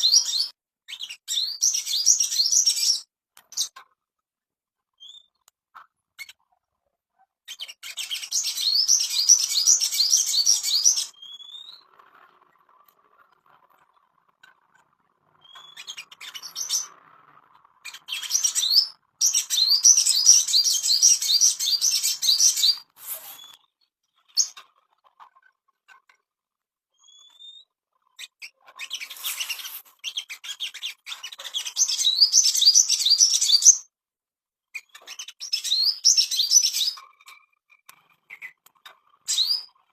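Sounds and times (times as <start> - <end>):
songbird rapid high chirping: 0.0 - 3.7, 7.5 - 11.9, 15.4 - 16.9, 17.8 - 23.6, 28.2 - 33.9, 34.8 - 37.1.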